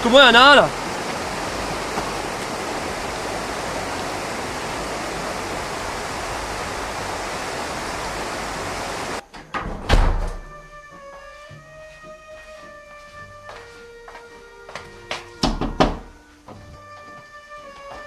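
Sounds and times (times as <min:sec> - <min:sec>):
steady rushing noise: 0:00.0 - 0:09.2.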